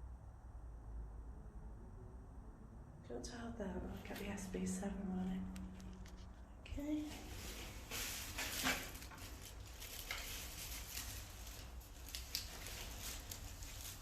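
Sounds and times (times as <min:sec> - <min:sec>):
steady low hum: 0:00.0 - 0:14.0
faint rustling and handling: 0:03.8 - 0:14.0.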